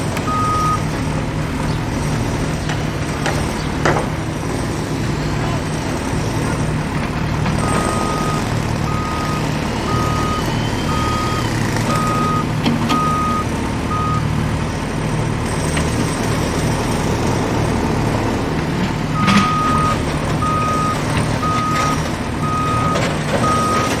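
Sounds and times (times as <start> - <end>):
diesel machine engine drone: 0.0 - 24.0
reversing alarm beeping: 0.2 - 3.9, 7.5 - 15.4, 19.1 - 24.0.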